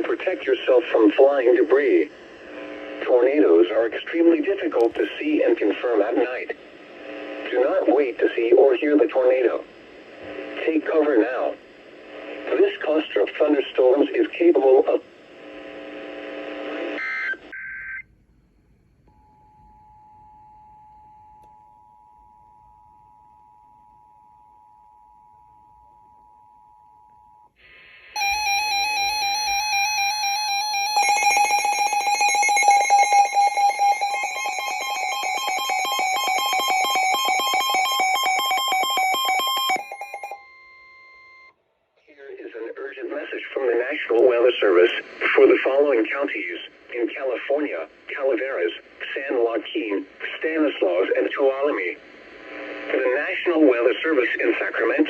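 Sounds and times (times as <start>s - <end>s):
faint steady tone: 17.6s - 30.2s.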